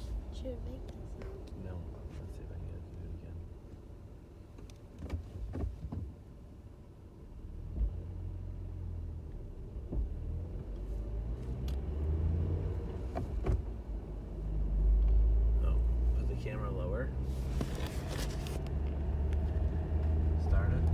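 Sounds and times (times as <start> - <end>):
car engine pulling away: 7.3 - 20.9.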